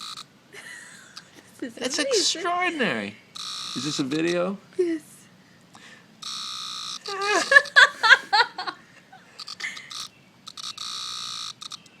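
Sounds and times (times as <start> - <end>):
cicada buzzing: 0.0 - 0.3, 3.3 - 4.5, 6.2 - 8.2, 9.4 - 12.0.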